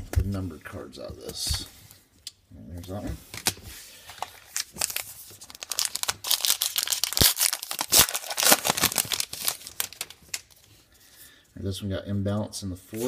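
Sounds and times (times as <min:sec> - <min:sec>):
wrapper tearing and crinkling: 0:04.2 - 0:10.7.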